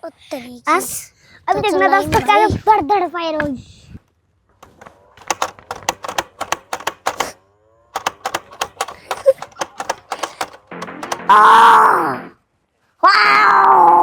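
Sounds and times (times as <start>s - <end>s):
toy blaster rapid clicking: 4.7s - 7.4s, 8.0s - 11.2s.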